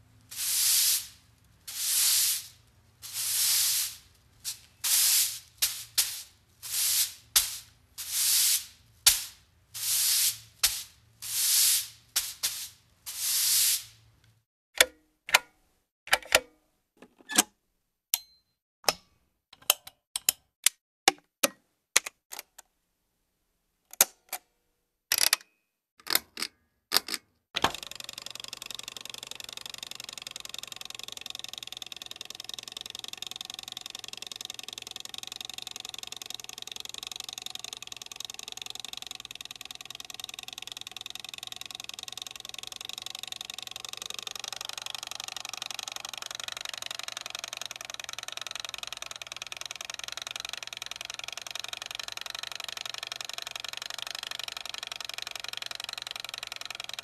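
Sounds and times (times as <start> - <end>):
electric appliance whirring: 27.6 - 57.0.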